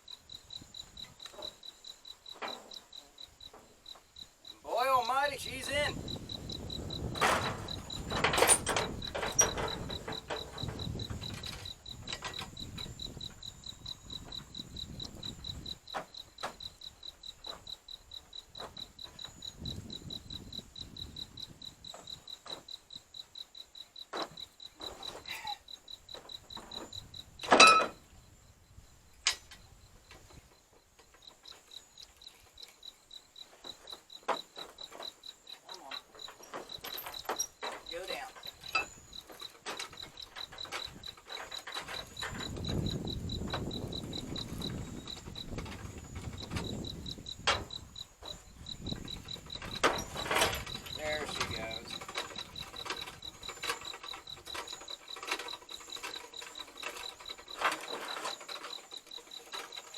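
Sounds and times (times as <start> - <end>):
crickets chirping: 0.0 - 59.9
metal knocks and clanks: 6.8 - 13.3, 26.1 - 28.0, 33.6 - 59.9
soft regular clicks: 29.2 - 59.9.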